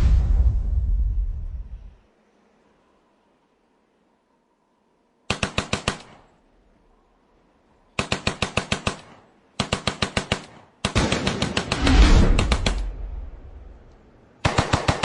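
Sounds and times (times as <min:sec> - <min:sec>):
automatic gunfire bursts: 0:05.3 - 0:06.4, 0:08.0 - 0:13.0, 0:14.4 - 0:15.0.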